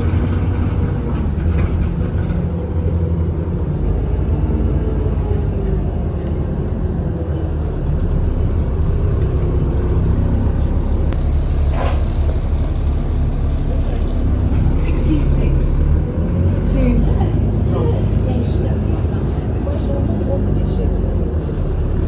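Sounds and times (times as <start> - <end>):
bus engine drone: 0.0 - 22.0.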